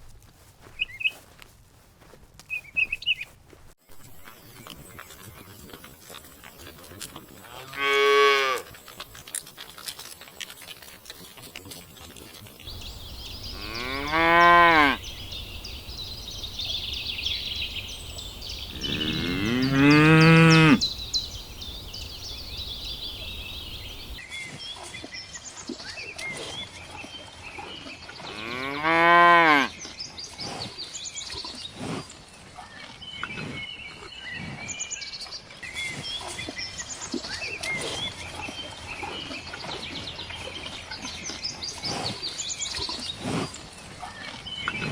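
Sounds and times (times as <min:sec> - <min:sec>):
cattle mooing: 0:07.4 - 0:08.7, 0:13.4 - 0:15.1, 0:18.6 - 0:21.0.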